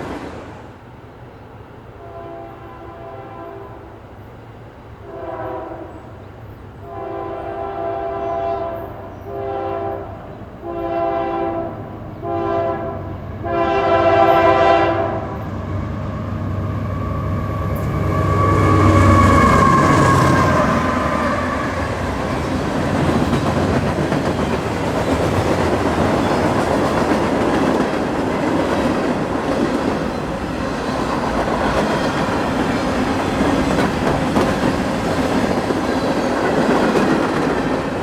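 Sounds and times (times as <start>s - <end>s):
locomotive air horn blasts: 2.0s - 3.8s, 5.0s - 5.9s, 6.8s - 22.4s
locomotive engine rumble: 15.0s - 38.0s
high tone bending downward: 15.4s - 22.5s.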